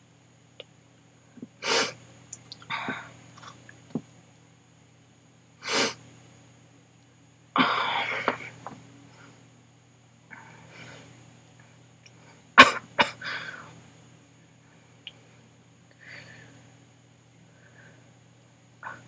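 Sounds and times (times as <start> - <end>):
faint breaths: 10.3 - 11.2, 14.6 - 16.8, 17.4 - 18.2
woman sneezing: 12.6 - 13.2.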